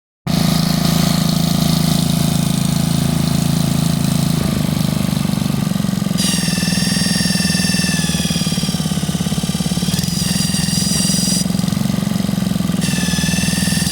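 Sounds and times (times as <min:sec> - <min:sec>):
small engine idling: 0:00.3 - 0:13.9
high whine: 0:05.4 - 0:11.8, 0:12.7 - 0:13.9.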